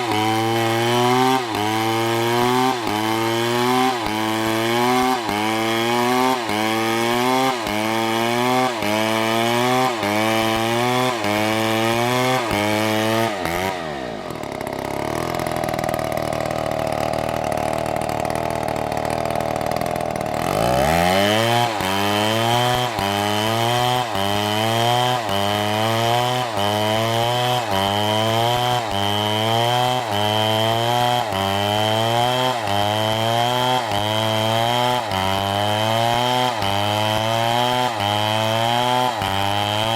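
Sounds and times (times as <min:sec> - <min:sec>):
power saw cutting wood: 0:00.0 - 0:39.9.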